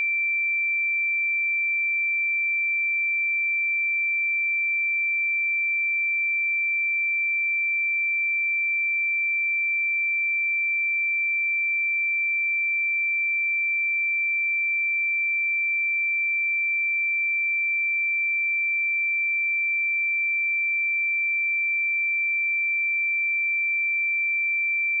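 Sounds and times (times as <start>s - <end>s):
high-pitched sine-wave test tone: 16.7s - 25.0s.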